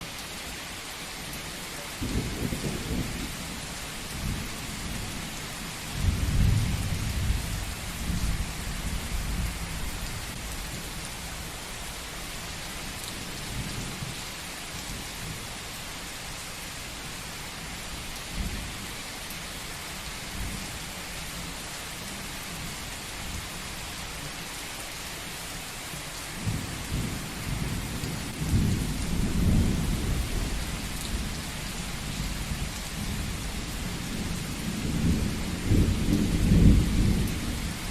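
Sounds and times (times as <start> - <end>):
steady rain: 0.0 - 37.9
thunder rumbling: 26.4 - 37.9.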